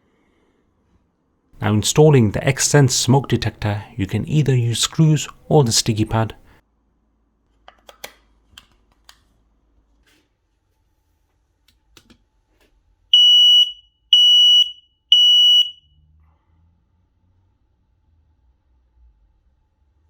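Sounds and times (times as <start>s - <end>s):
smoke alarm beeps: 13.2s - 15.8s.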